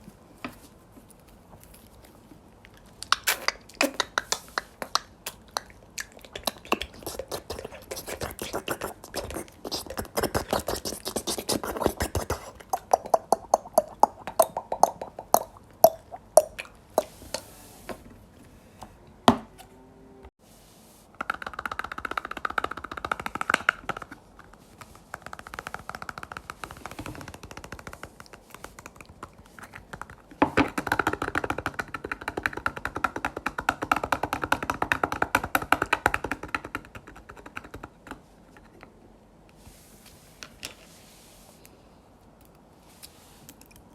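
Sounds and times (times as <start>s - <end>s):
sticky wet crackling: 1.2s - 17.4s
rapid bubbly squelching: 6.3s - 17.2s.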